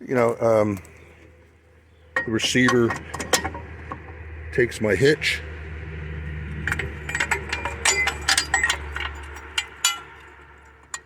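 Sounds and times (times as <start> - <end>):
low steady hum: 0.0 - 11.0
steel clinks and knocks: 6.4 - 11.0.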